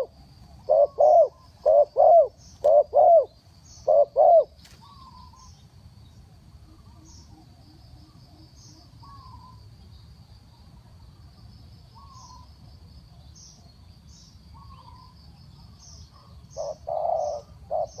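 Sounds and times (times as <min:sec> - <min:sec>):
dove cooing: 0:00.0 - 0:05.5, 0:16.1 - 0:18.0.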